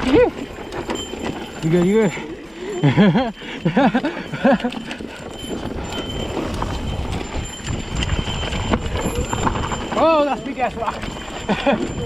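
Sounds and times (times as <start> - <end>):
bike rattling over rocks: 0.0 - 12.0
rider calling out: 9.0 - 12.0.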